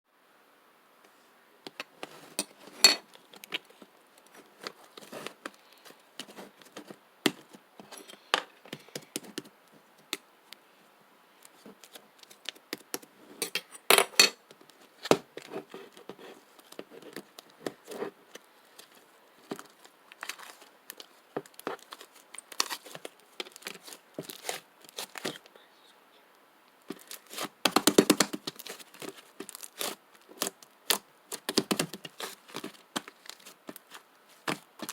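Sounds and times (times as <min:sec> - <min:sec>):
sticky pops and crackling clicks: 0:26.7 - 0:34.9.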